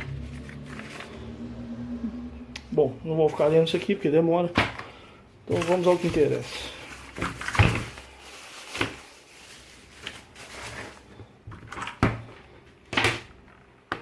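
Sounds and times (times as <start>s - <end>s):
box knocks and thuds: 7.2s - 8.0s.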